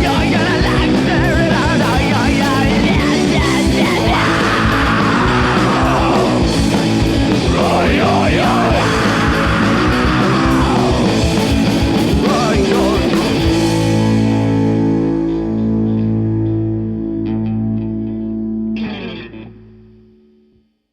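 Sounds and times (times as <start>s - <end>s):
driving drums: 0.0s - 15.4s
punk rock band: 0.0s - 19.4s
distorted electric guitars: 0.0s - 20.4s.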